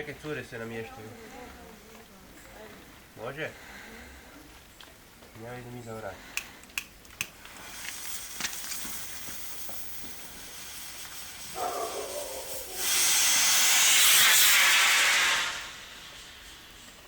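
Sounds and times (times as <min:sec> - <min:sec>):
rocket motor hissing burn: 0:07.2 - 0:17.0
rocket motor sputter: 0:07.4 - 0:17.0.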